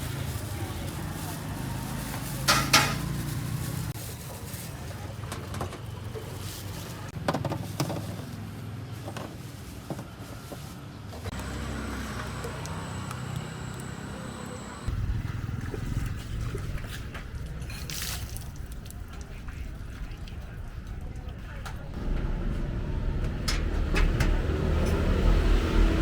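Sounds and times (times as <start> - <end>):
steady low rumble: 14.9 - 26.0.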